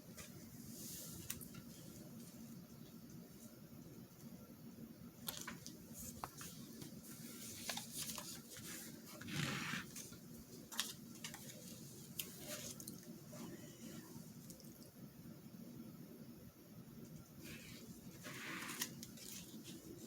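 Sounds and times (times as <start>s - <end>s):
paper rustling: 5.3s - 13.0s, 17.4s - 20.0s.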